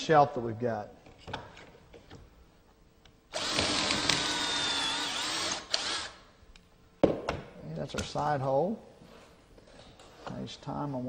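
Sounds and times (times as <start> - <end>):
power drill boring into wood: 3.3 - 6.2.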